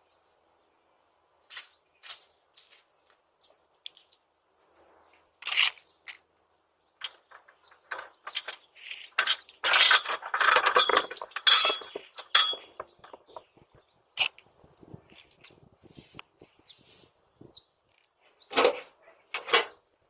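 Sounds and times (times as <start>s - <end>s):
small hard objects clattering: 7.0s - 14.4s.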